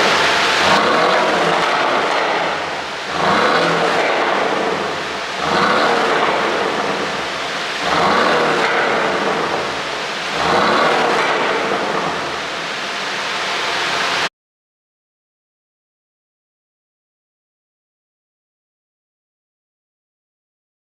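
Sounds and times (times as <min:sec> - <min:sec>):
exhaust crackling and popping: 0:00.0 - 0:13.4
car engine revving: 0:00.0 - 0:14.3.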